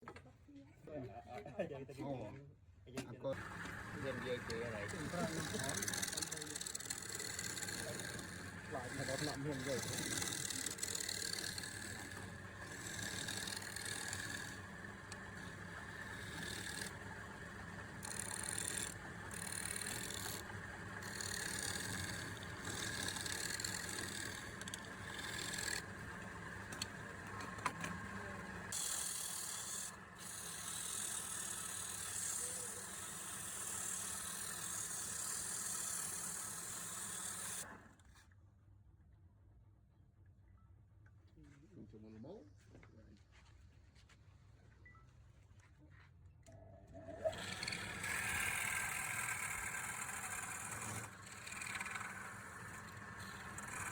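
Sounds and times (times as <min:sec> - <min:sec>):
turning tool cutting wood: 0:03.3 - 0:38.0, 0:47.0 - 0:53.9
wood lathe motor hum: 0:03.3 - 0:38.0, 0:46.9 - 0:53.9.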